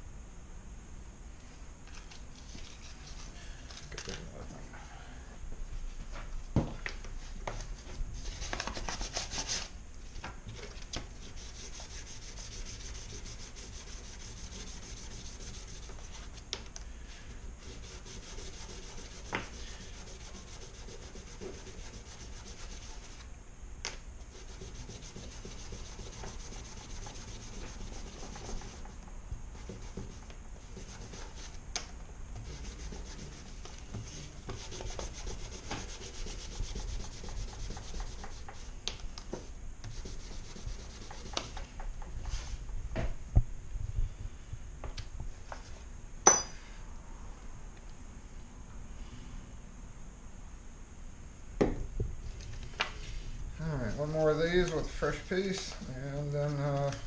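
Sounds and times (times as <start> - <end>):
sandpaper scraping metal: 11.2 - 16.3, 17.6 - 23.3, 24.3 - 28.9, 29.6 - 31.6, 32.4 - 38.7, 53.9 - 56.8.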